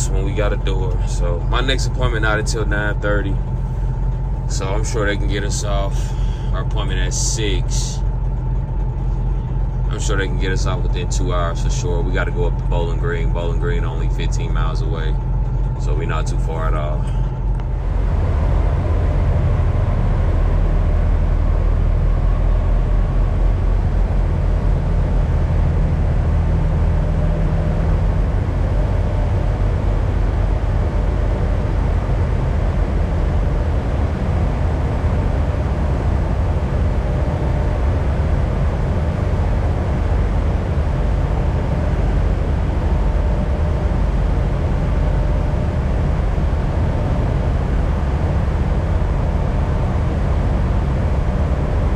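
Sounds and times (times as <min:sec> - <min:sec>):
truck diesel engine droning: 0:00.0 - 0:51.9.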